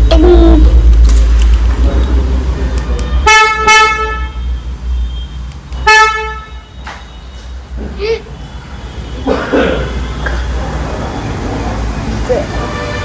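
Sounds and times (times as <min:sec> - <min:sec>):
vehicle horn honking: 0:03.0 - 0:07.3, 0:12.6 - 0:13.0.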